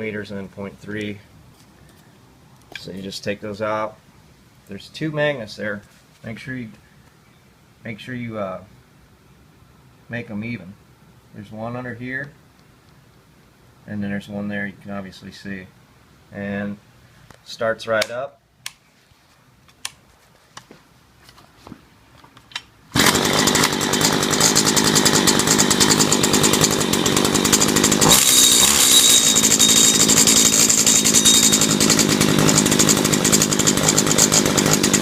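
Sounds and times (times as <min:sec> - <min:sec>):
string trimmer engine running: 0:22.9 - 0:35.0.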